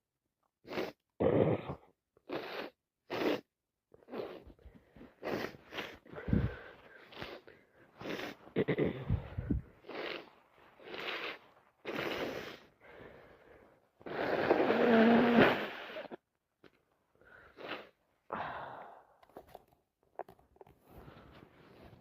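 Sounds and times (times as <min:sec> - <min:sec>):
person sniffing and breathing: 0:00.6 - 0:01.0, 0:02.2 - 0:16.2, 0:17.2 - 0:19.6, 0:20.8 - 0:22.0
person blowing nose: 0:00.6 - 0:12.8, 0:14.0 - 0:16.2, 0:17.4 - 0:18.0.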